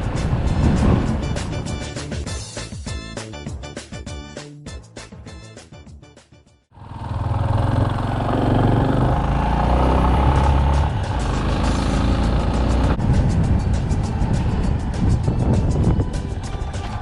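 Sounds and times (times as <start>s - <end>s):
steady rushing noise: 0.0s - 2.3s, 10.8s - 17.0s
motorcycle engine running: 6.7s - 17.0s.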